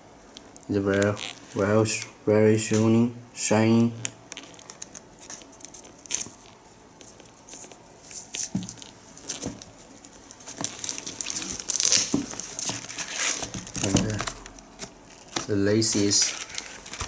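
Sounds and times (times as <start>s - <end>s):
small crackles and clicks: 4.0s - 13.0s
plastic film crinkling: 4.3s - 17.0s.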